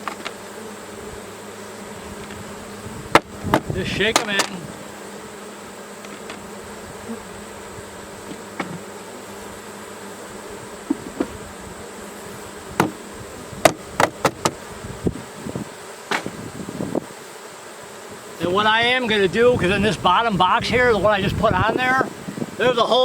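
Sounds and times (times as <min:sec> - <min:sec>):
honeybees buzzing: 0:00.0 - 0:23.0
sharp knocks: 0:10.8 - 0:11.4, 0:12.8 - 0:13.0, 0:13.6 - 0:14.6.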